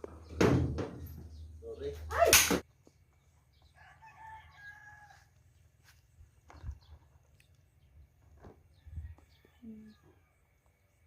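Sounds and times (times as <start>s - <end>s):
rooster crowing: 3.8s - 5.3s.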